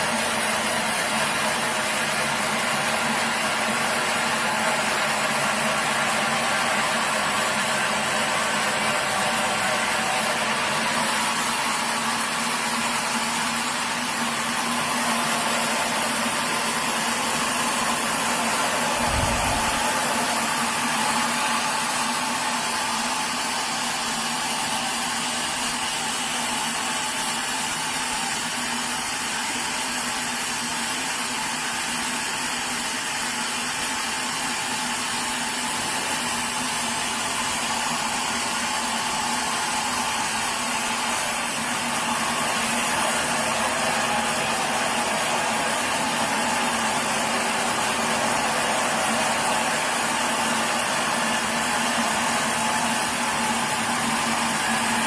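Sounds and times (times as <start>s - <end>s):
sawmill machinery whine: 0.0s - 55.0s.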